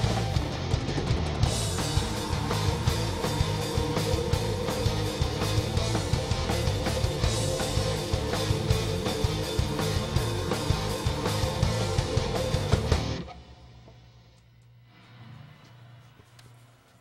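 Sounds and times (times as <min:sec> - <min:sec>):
metal band playing live: 0:00.0 - 0:13.4.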